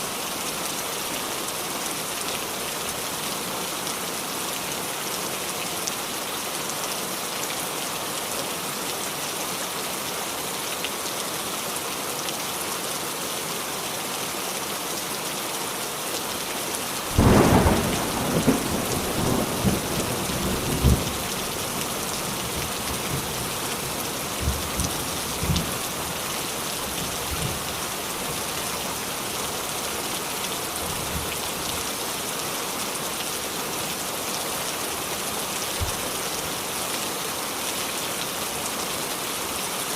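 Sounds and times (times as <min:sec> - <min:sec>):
heavy rain falling: 0:00.0 - 0:39.9
thunder rumbling: 0:17.2 - 0:21.2.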